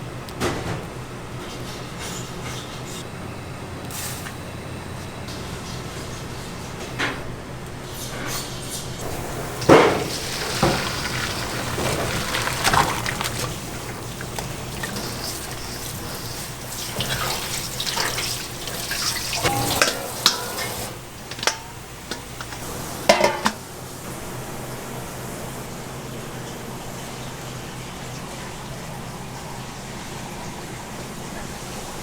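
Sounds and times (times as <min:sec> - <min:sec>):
water running from tap: 0:09.0 - 0:32.0.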